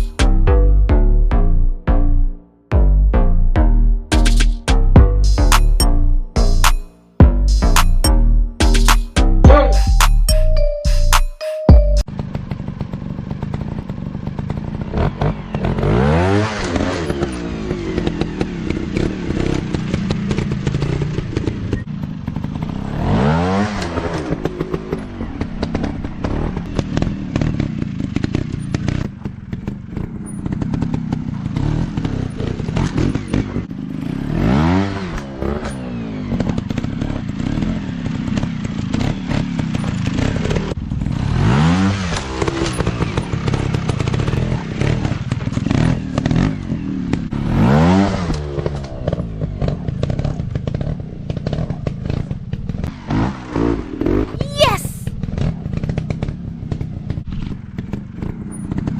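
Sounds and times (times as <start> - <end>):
dirt bike engine revving: 14.8 - 21.5, 30.0 - 50.8.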